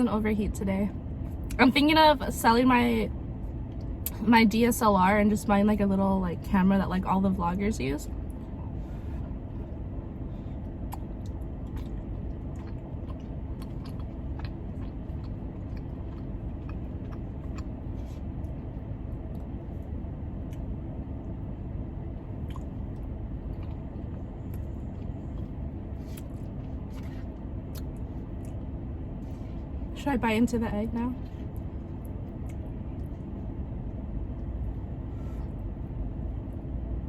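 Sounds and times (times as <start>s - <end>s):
car air conditioning hum: 0.0s - 37.0s
close-up chewing and biting: 10.6s - 20.7s, 22.3s - 29.5s.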